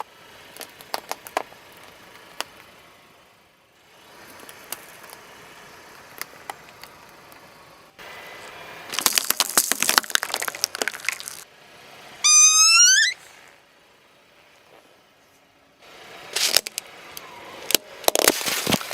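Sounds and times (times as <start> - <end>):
objects crunching under car tyre: 0.0 - 2.7, 8.9 - 11.5, 16.4 - 16.8, 17.7 - 18.9
rising squeal: 12.2 - 13.3.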